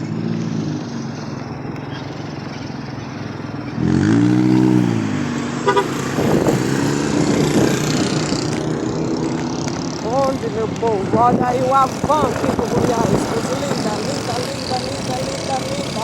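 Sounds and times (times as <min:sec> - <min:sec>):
wind and road noise: 0:00.0 - 0:16.0
vehicle horn: 0:05.5 - 0:06.3.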